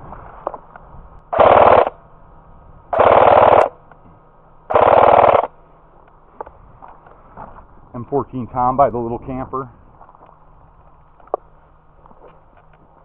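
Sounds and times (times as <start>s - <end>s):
airsoft rifle full-auto bursts: 1.3s - 2.0s, 3.0s - 3.8s, 4.7s - 5.5s.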